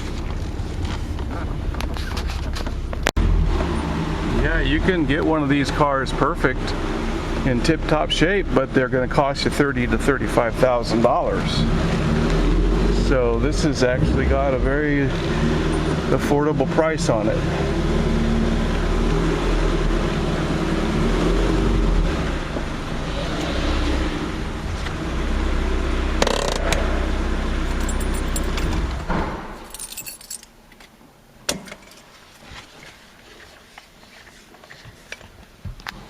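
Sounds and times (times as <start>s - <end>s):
car engine running: 0.0s - 29.1s
keys jangling: 27.6s - 28.8s, 29.6s - 30.6s.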